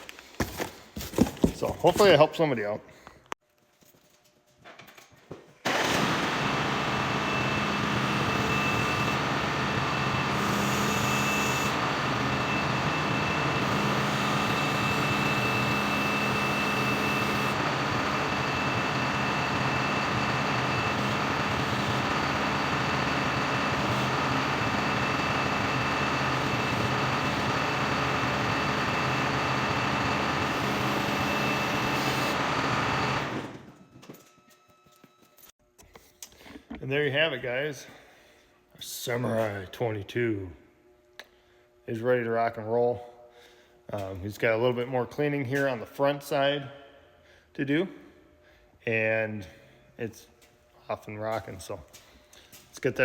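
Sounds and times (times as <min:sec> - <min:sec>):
tractor engine running: 0:05.7 - 0:33.5
high steady whine: 0:06.2 - 0:33.4.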